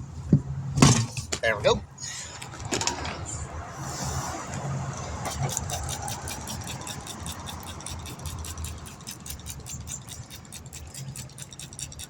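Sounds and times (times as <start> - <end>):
rapid even clicking: 5.3 - 12.0.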